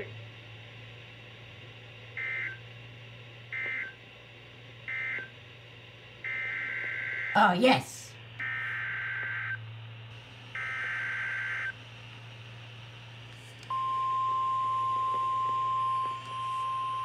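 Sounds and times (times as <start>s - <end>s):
steady alarm tone: 2.2s - 2.6s, 4.9s - 5.3s, 6.2s - 7.6s, 8.4s - 9.6s, 10.4s - 11.8s, 13.7s - 17.0s
low hum: 8.0s - 17.0s.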